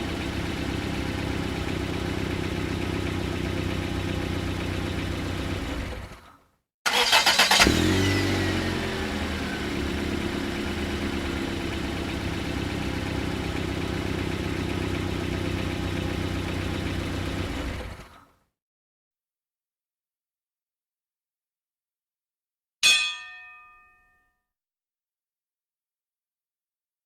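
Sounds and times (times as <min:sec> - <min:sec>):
car engine idling: 0:00.0 - 0:06.2, 0:06.9 - 0:18.2
car starter cranking: 0:06.9 - 0:08.4.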